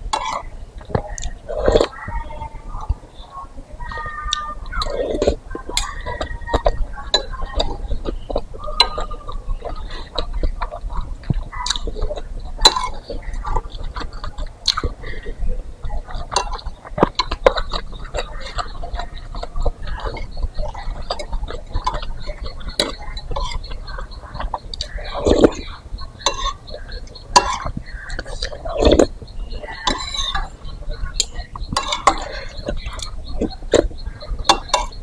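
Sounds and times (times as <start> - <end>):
mouth clicks: 0.0 - 35.0
wet chewing: 3.8 - 35.0
spoon clinking on bowl: 25.3 - 26.7, 27.4 - 29.1, 29.8 - 30.6, 31.2 - 33.9, 34.5 - 35.0.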